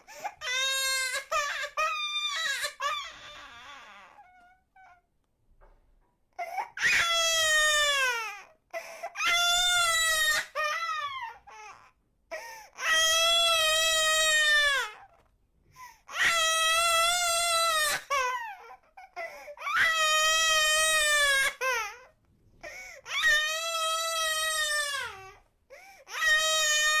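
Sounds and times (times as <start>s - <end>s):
baby crying: 0.0s - 5.0s, 6.4s - 15.2s, 16.1s - 27.0s
baby gasping breaths: 22.6s - 23.1s.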